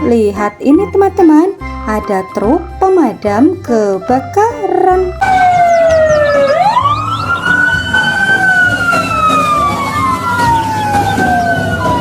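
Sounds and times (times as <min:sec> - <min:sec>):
fire engine siren wailing: 0:05.2 - 0:12.0.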